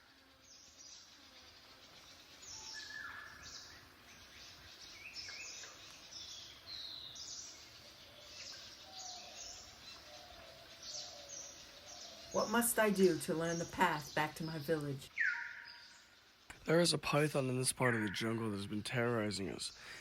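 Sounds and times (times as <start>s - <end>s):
faint steady hiss: 0.0s - 20.0s
birds chirping and whistling: 2.1s - 16.9s.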